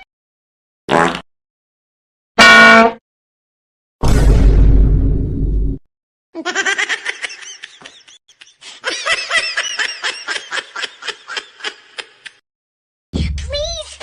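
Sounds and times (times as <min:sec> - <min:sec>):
loud deep sound effect: 0:04.0 - 0:05.8.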